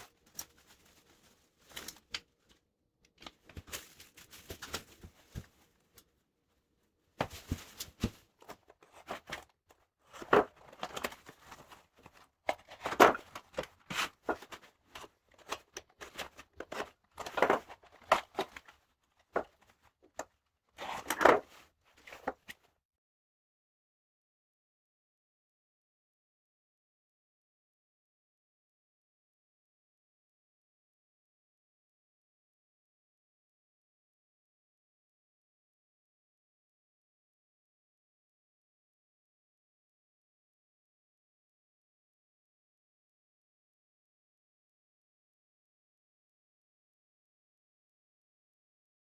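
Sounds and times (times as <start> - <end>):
packing material crinkling: 0.0 - 2.5, 3.2 - 5.6, 10.1 - 18.7.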